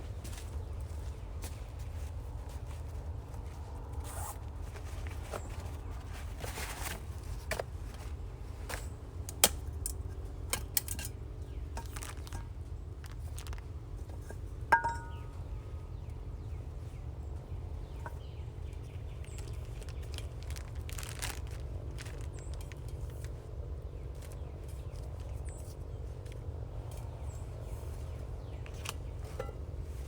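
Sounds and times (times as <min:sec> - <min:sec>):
cooking gear clicks and knocks: 0:08.7 - 0:15.3
metal clink ringing: 0:14.8 - 0:15.3.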